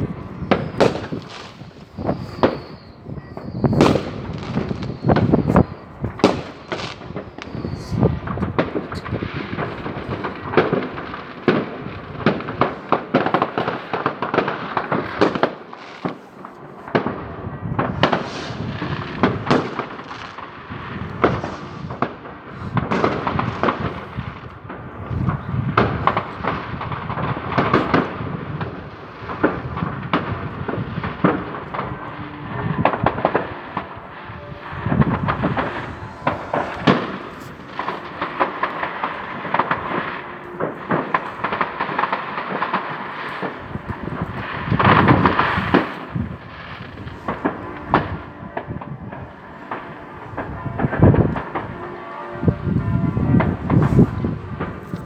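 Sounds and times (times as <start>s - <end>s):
firecrackers crackling: 0.0s - 55.0s
fireworks banging: 0.0s - 55.0s.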